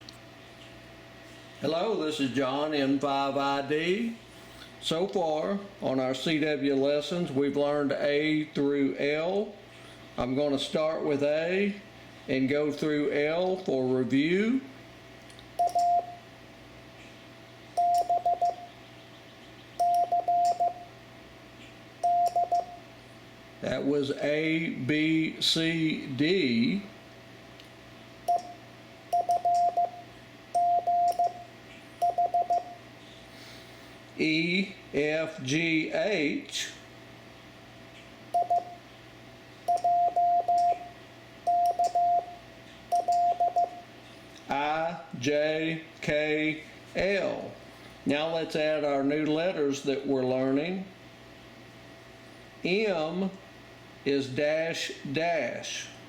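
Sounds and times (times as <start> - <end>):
morse code tone: 15.6 - 16.2, 17.8 - 18.7, 19.8 - 20.9, 22.0 - 22.8, 28.3 - 32.8, 38.4 - 38.8, 39.7 - 40.9, 41.5 - 43.9.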